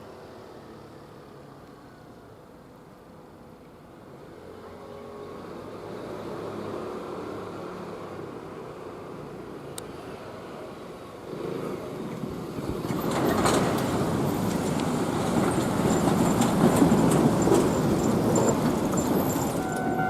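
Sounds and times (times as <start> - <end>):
electric train passing: 12.1 - 20.0
wheel and rail clicks: 12.1 - 20.0.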